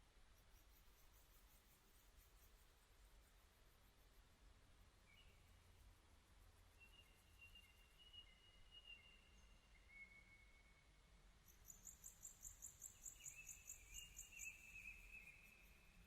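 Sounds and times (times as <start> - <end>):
whistled bird calls: 6.8 - 10.9.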